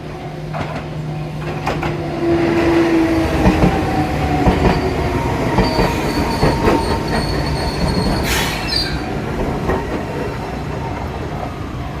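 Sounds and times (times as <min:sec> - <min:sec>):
train wheels clacking over rails: 0:00.5 - 0:10.4
high wheel squeal: 0:05.6 - 0:09.1.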